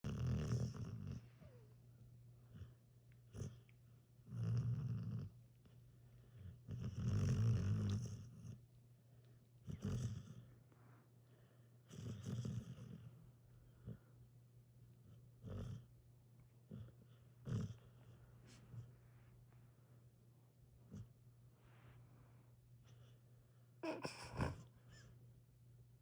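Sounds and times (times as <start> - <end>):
dog snoring: 0.0 - 1.6, 3.3 - 8.6, 9.6 - 10.5, 11.9 - 13.2, 15.1 - 15.9, 16.7 - 18.8.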